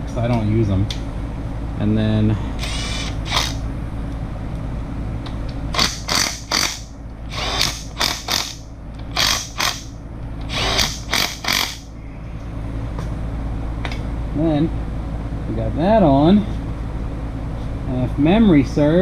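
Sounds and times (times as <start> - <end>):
cordless power tool driving bolts: 2.6 - 3.6, 5.7 - 11.8.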